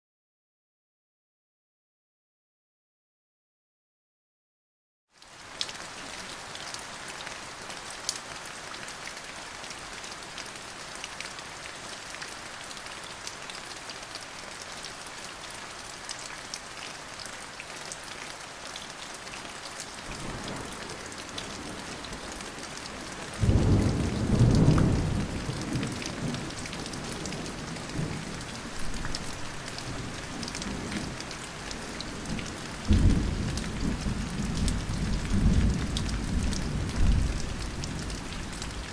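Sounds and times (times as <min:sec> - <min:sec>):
steady rain falling: 0:05.1 - 0:38.9
thunder rumbling: 0:23.4 - 0:26.5.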